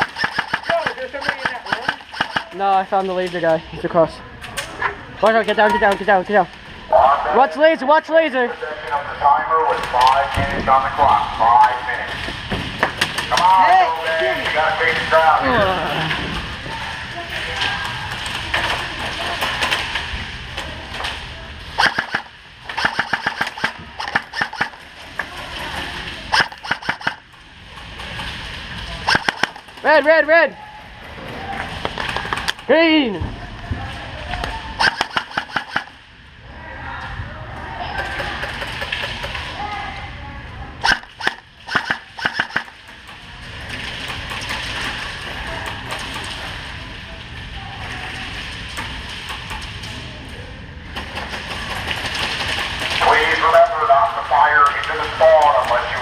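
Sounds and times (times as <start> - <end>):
airsoft guns firing: 0.0 - 2.6, 21.8 - 24.8, 26.3 - 27.2, 29.1 - 29.7, 34.8 - 36.0, 40.8 - 42.8
steady background noise: 0.0 - 56.0.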